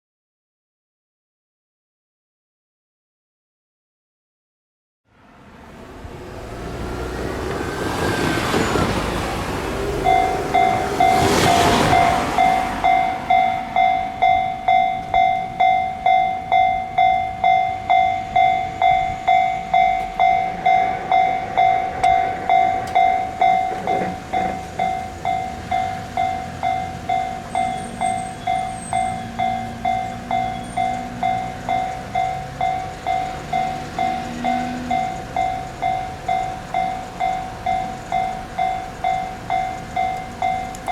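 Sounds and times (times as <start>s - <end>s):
loud passing rush: 5.1s - 15.0s, 17.9s - 35.1s
level-crossing alarm ringing: 10.0s - 40.9s.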